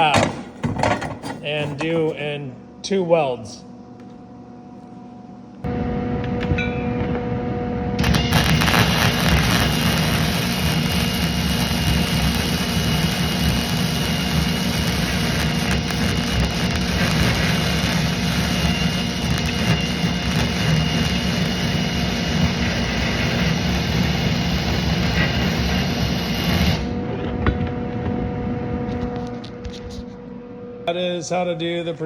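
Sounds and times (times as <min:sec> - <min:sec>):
welding arc crackling and buzzing: 0:07.9 - 0:27.2.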